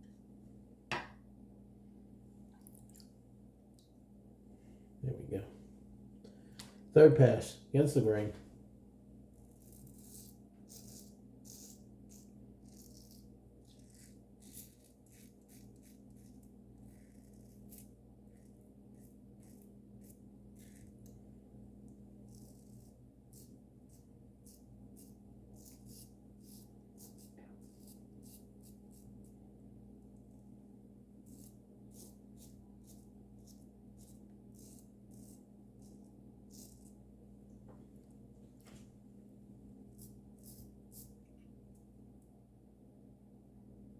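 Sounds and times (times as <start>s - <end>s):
razor scraping stubble: 9.5s - 21.2s, 22.2s - 29.3s, 31.2s - 37.0s, 39.9s - 41.2s.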